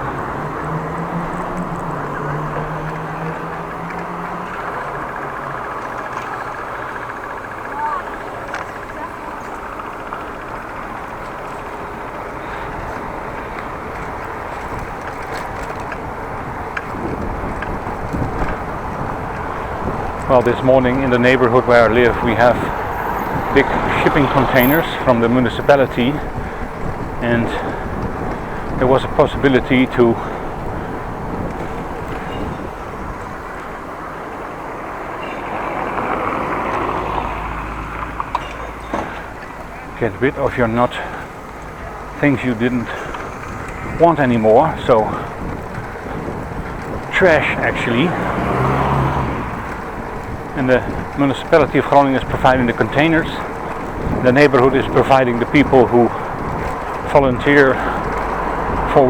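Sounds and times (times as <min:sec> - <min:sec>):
low wind gusts: 0:00.0 - 0:59.0
road noise: 0:00.0 - 0:59.0
wind rush: 0:12.6 - 0:37.9, 0:40.1 - 0:59.0.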